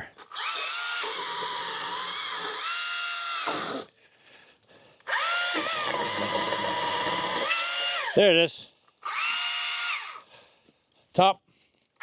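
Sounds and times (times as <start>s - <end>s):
electric pole saw whining: 0.2s - 3.9s, 5.1s - 8.2s, 9.0s - 10.2s.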